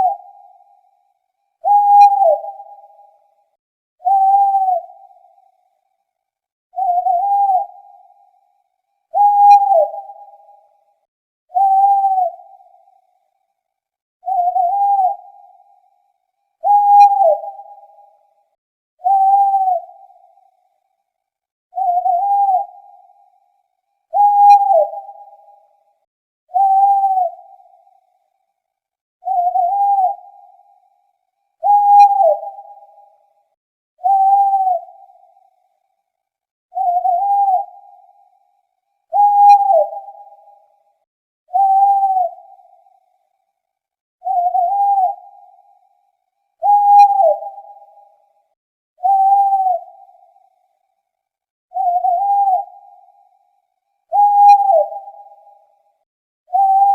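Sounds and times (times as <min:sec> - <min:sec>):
owl hooting: 0:00.0 - 0:00.8, 0:01.6 - 0:03.0, 0:04.0 - 0:05.6, 0:06.8 - 0:08.5, 0:09.1 - 0:10.7, 0:11.5 - 0:13.1, 0:14.2 - 0:16.0, 0:16.6 - 0:18.2, 0:19.0 - 0:20.7, 0:21.8 - 0:23.5, 0:24.1 - 0:25.7, 0:26.5 - 0:28.3, 0:29.2 - 0:33.4, 0:34.0 - 0:35.8, 0:36.7 - 0:38.5, 0:39.1 - 0:40.9, 0:41.5 - 0:43.4, 0:44.2 - 0:48.4, 0:49.0 - 0:50.9, 0:51.7 - 0:55.9, 0:56.5 - 0:56.9.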